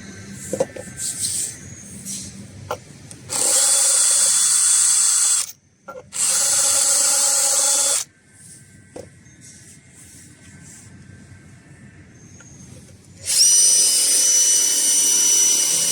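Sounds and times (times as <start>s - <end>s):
electric drill whining: 3.3s - 5.5s, 6.2s - 8.1s, 13.2s - 15.9s.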